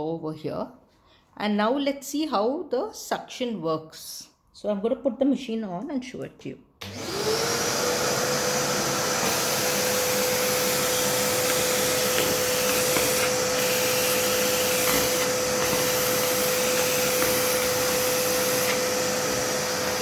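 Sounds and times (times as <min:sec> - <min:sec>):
vacuum cleaner running: 0:06.8 - 0:20.0.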